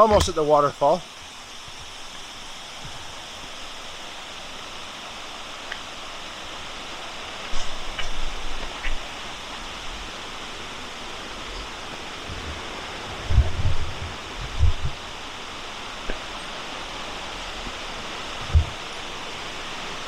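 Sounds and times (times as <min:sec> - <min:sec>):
water rushing over rocks: 0:00.0 - 0:20.0
short low thumps: 0:13.3 - 0:15.0, 0:18.4 - 0:18.8.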